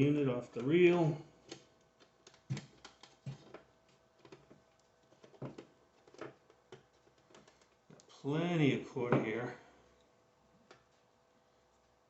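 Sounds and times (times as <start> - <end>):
faint cooling fan hum: 0.0 - 12.0
cable leads clicking and knocking: 0.5 - 8.1.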